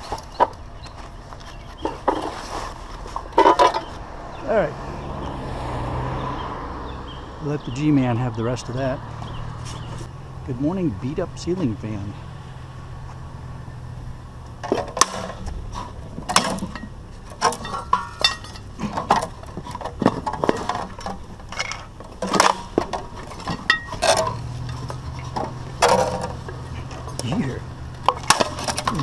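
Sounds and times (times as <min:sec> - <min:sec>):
metal fan parts clanking: 0:00.0 - 0:04.0, 0:13.1 - 0:29.0.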